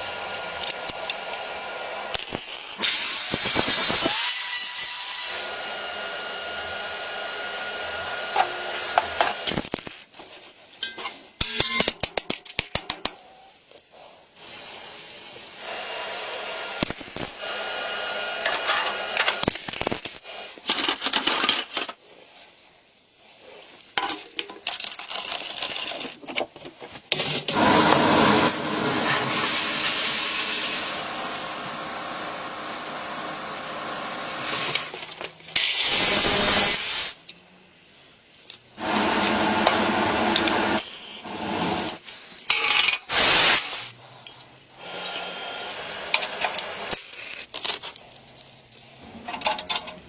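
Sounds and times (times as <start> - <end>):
small power tool whining: 27.5 - 35.0.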